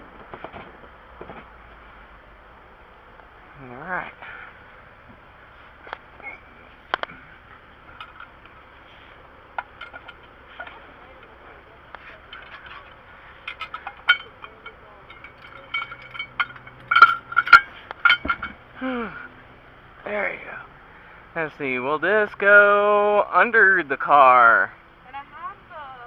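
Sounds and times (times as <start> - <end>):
metal tools clinking: 6.2 - 18.7.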